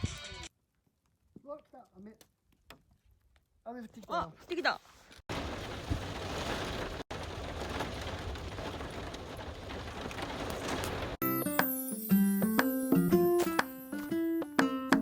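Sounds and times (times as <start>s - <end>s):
steady rain falling: 5.3s - 11.2s.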